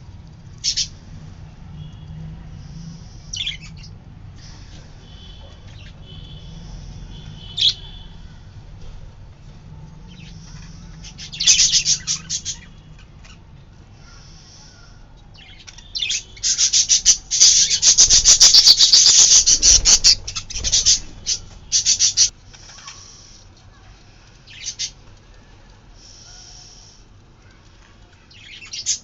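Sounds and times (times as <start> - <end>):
budgerigar chicks chirping: 0.6 - 0.9, 10.0 - 13.4, 14.0 - 23.4.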